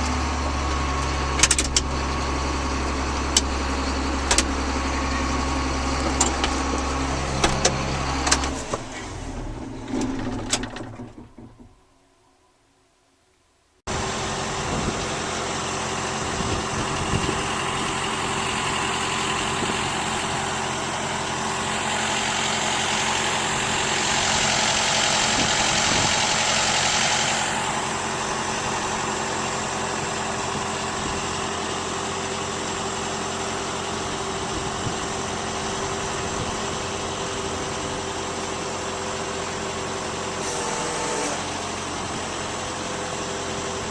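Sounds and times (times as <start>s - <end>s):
machinery engine running: 0.0s - 11.8s, 13.9s - 43.9s
engine drone with hum: 0.0s - 11.9s, 13.9s - 43.9s.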